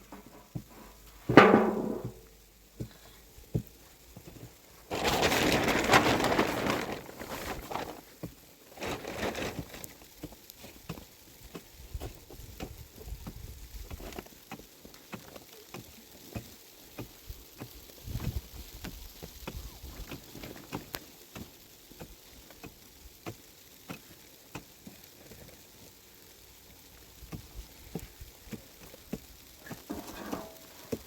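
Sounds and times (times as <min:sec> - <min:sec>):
plastic sheeting rustling: 0:03.8 - 0:14.4, 0:17.3 - 0:21.4, 0:27.6 - 0:31.0.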